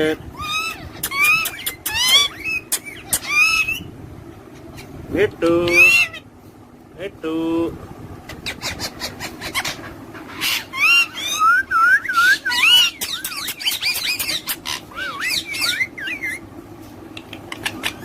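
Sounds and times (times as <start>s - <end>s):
parrot whistling and chattering: 0.3s - 4.0s, 5.6s - 6.2s, 8.3s - 16.5s, 17.2s - 18.0s.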